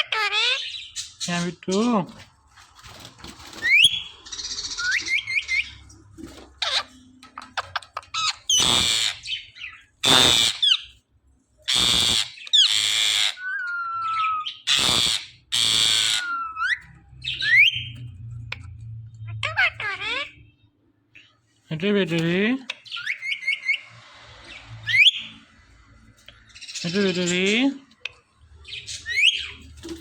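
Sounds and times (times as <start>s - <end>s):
parrot harsh squawks: 0.0s - 1.3s, 8.1s - 11.0s, 11.7s - 17.9s, 19.2s - 20.5s.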